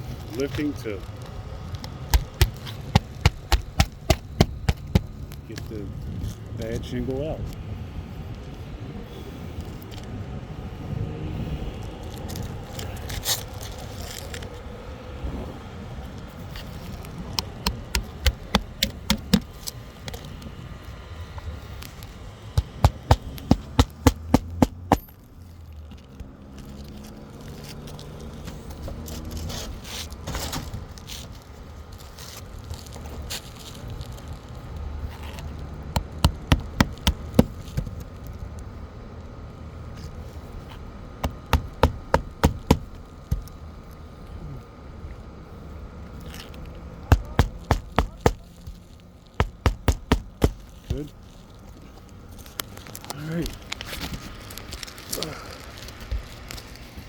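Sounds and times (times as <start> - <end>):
hammer driving nails into shingle: 2.1 - 5.1, 17.4 - 19.5, 22.6 - 25.1, 36.0 - 38.0, 41.2 - 43.6, 47.1 - 48.8, 49.4 - 51.1.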